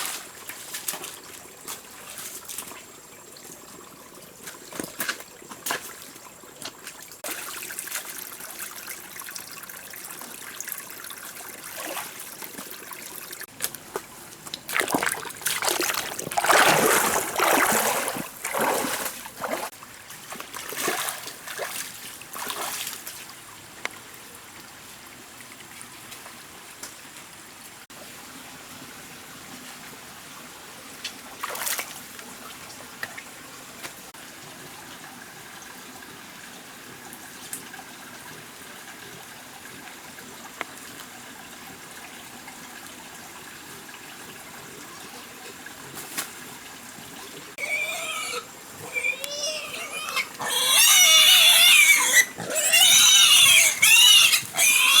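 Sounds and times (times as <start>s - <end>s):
wild boar squealing: 47.6s - 55.0s.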